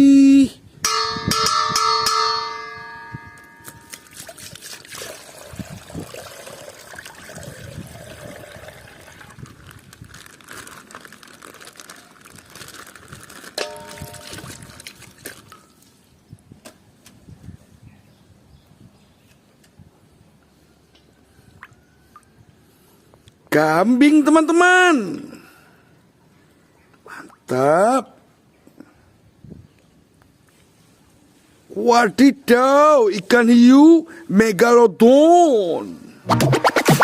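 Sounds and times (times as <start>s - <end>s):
bell-like ding: 0.9s - 3.9s.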